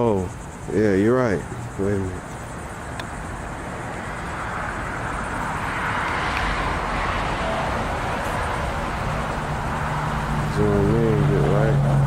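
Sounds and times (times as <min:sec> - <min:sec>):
car passing by: 0:03.5 - 0:12.0.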